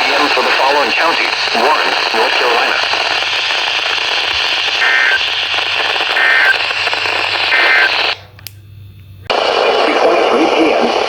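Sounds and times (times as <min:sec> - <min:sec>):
radio static: 0:00.0 - 0:08.2, 0:09.3 - 0:11.0
faint hum: 0:00.0 - 0:11.0
two-tone digital data bursts: 0:04.8 - 0:06.6, 0:07.5 - 0:08.1.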